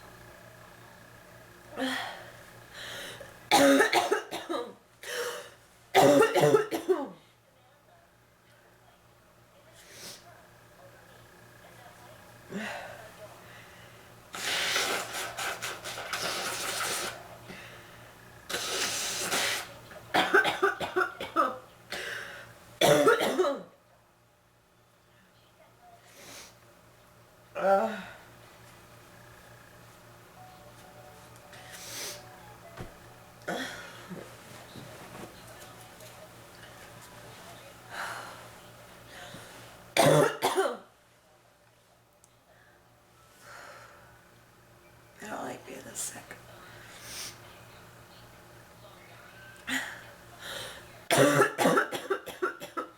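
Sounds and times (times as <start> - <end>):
woman coughing: 3.5 - 7.2, 20.1 - 22.1, 22.8 - 23.7, 40.0 - 40.9, 51.1 - 52.9
woman blowing her nose: 14.3 - 17.2, 18.5 - 19.8.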